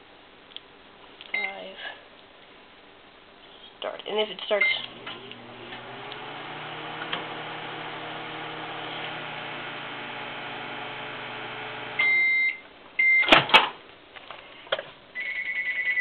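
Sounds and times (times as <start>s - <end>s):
microwave oven humming: 4.6s - 12.6s
microwave beeps: 11.5s - 13.4s.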